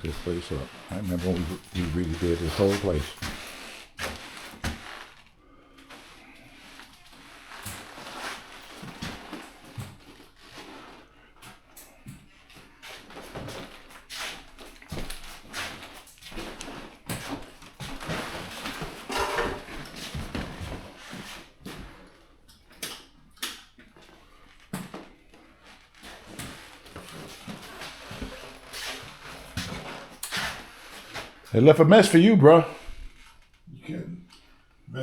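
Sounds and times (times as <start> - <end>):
scraping of things handled: 0.0 - 5.2, 12.9 - 22.0.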